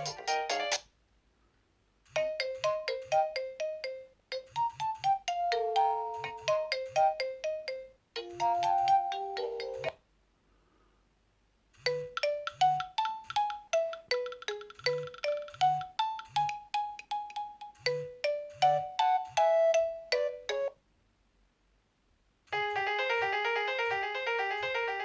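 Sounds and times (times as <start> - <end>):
polyphonic ringtones: 11.8 - 20.7, 22.5 - 25.0.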